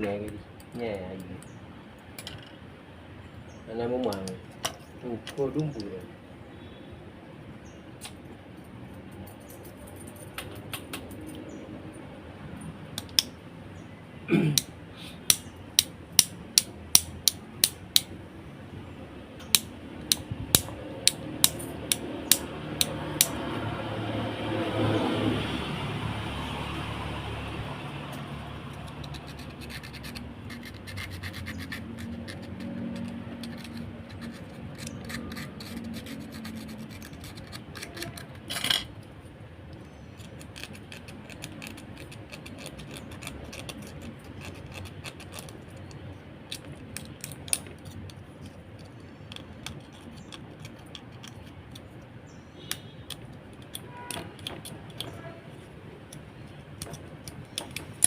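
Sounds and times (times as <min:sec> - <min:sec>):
hands scratching and rubbing parts: 0:28.2 - 0:39.1, 0:39.7 - 0:52.1, 0:52.7 - 0:58.0.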